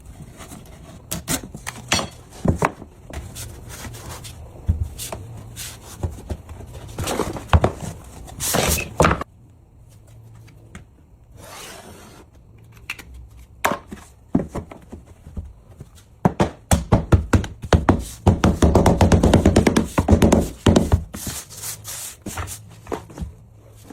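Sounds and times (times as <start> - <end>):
knocks on laminate flooring: 16.2 - 21.0.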